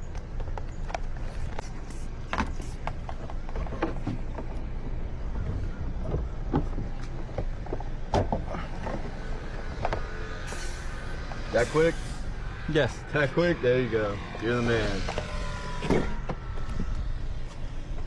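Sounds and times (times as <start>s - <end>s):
steady low rumble: 4.2s - 18.0s.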